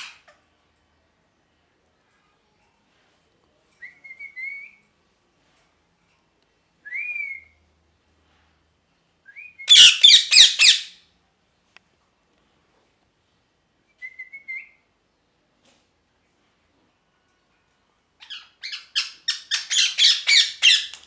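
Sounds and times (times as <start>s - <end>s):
parrot whistled call: 9.4s - 10.9s
parrot squawking harshly: 9.7s - 11.0s, 18.3s - 21.0s.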